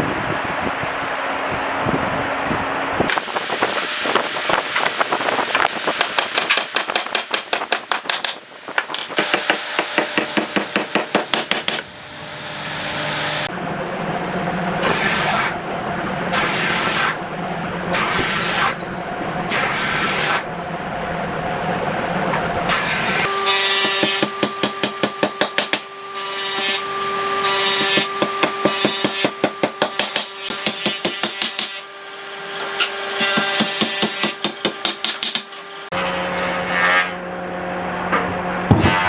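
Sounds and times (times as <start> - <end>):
hand tool working wood: 14.8 - 15.6, 16.4 - 17.2, 18.0 - 18.8, 19.5 - 20.4, 22.7 - 26.8, 27.4 - 31.8
power tool cutting wood: 14.8 - 15.6, 16.3 - 17.2, 17.9 - 18.8, 19.5 - 20.4, 22.7 - 34.7.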